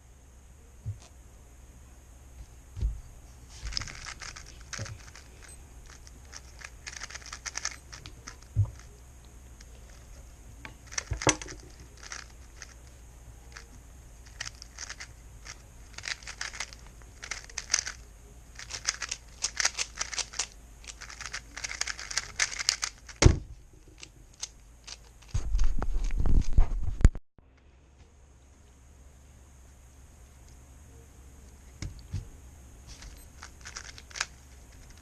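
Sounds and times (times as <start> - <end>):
puzzle cube clicking turns: 3.7 - 8.9, 10.8 - 12.8, 14.3 - 18.0, 18.6 - 23.3, 33.0 - 35.0.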